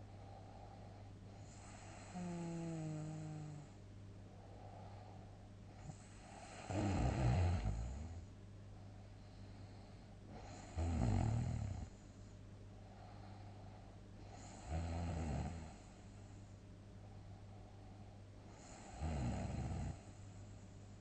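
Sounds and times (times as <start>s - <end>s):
quiet breaths: 0.0s - 21.0s
steady low hum: 0.0s - 21.0s
person snoring heavily: 1.5s - 3.7s, 5.9s - 8.2s, 10.4s - 11.9s, 14.4s - 15.8s, 18.6s - 20.1s.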